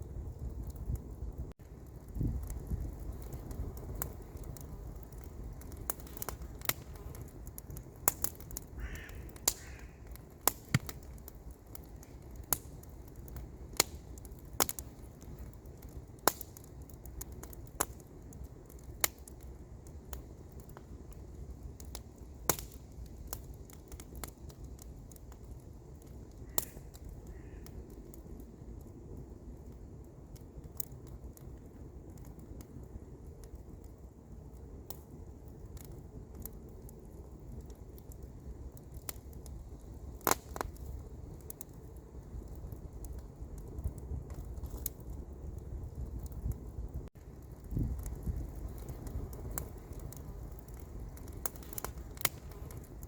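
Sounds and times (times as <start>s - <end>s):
campfire crackling: 0.0s - 53.0s.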